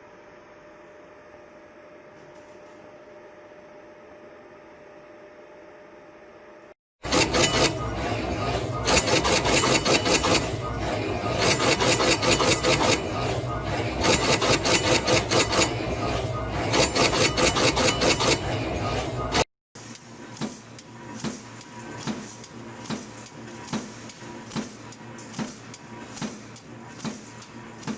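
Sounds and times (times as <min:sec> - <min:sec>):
machine rasping strokes: 0:07.0 - 0:27.9.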